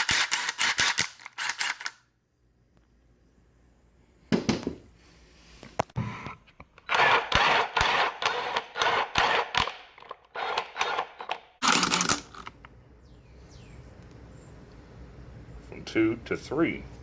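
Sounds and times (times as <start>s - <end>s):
impact driver motor bursts: 0.0s - 1.9s.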